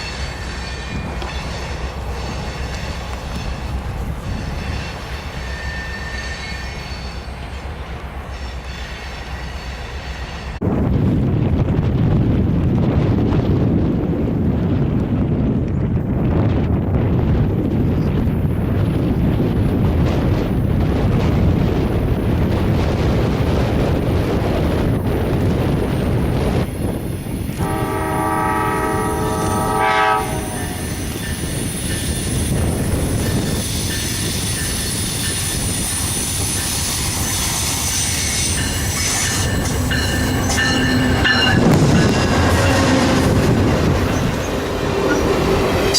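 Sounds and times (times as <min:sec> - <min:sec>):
train rumbling: 0:00.0 - 0:45.9
train horn chord: 0:27.6 - 0:31.1.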